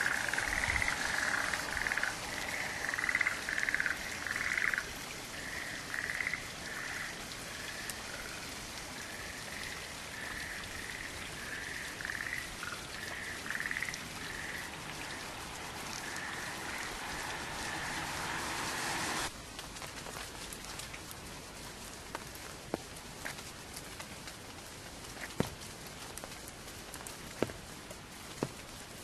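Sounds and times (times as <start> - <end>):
drizzle hiss: 15.3 - 19.3.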